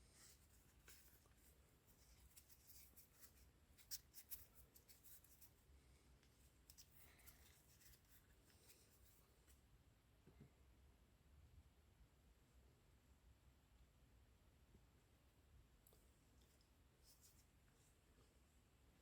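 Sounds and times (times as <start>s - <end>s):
scratchy handling rustles: 0.1s - 5.6s.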